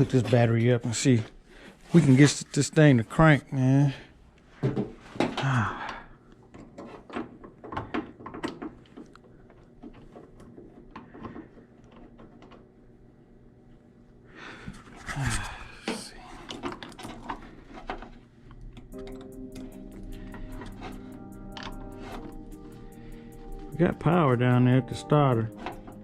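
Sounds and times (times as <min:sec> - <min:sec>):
breathing: 0:01.4 - 0:01.9, 0:05.4 - 0:06.3, 0:11.0 - 0:11.8, 0:14.2 - 0:17.9, 0:19.6 - 0:23.7
tools clicking and knocking: 0:06.5 - 0:12.6.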